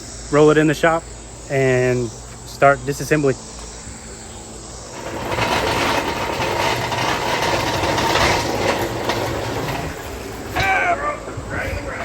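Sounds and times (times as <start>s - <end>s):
hoist casters rattling on concrete: 4.8s - 12.0s.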